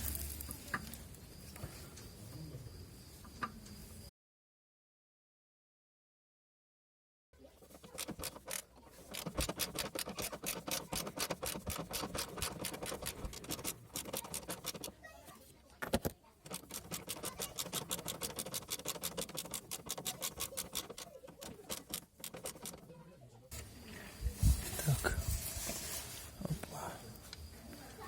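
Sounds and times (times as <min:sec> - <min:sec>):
ratchet wrench clicking: 0:07.7 - 0:15.0, 0:16.4 - 0:22.9.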